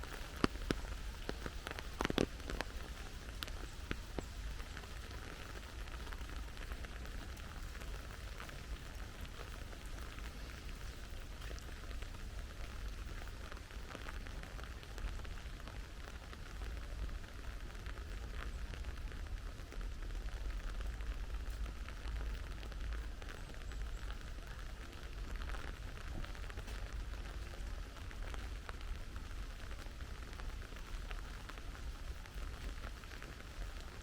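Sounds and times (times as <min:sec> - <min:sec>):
rain drops pattering: 0:00.0 - 0:34.0.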